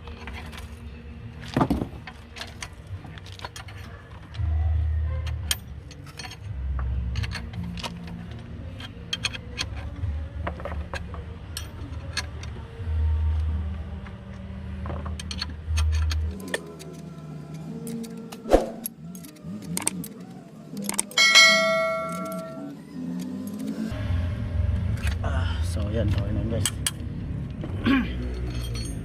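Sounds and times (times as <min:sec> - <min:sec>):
metal tools clicking: 0:07.1 - 0:10.0, 0:15.2 - 0:23.8, 0:28.2 - 0:29.0.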